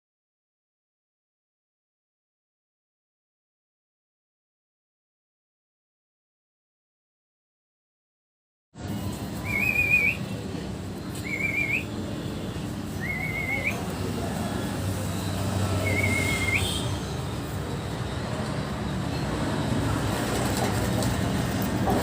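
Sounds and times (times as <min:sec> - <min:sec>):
short wavering whistled notes: 0:09.4 - 0:10.3.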